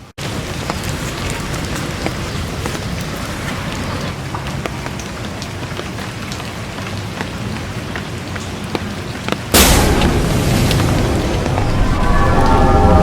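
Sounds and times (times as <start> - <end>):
rain pattering: 0.0 - 13.0
low rumble: 9.6 - 13.0.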